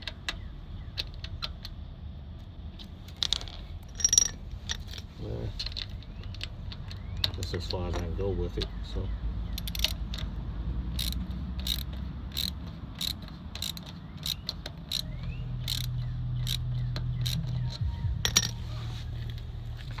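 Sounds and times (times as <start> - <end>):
low steady hum: 0.0 - 20.0
ratchet clicking: 3.2 - 5.0, 9.5 - 10.3, 10.9 - 18.6.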